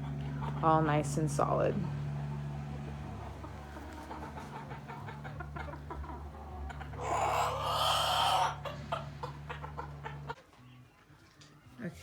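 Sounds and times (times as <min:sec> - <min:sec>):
steady low hum: 0:00.0 - 0:07.6
chickens clucking: 0:00.0 - 0:12.0
harsh chicken call: 0:03.8 - 0:10.4.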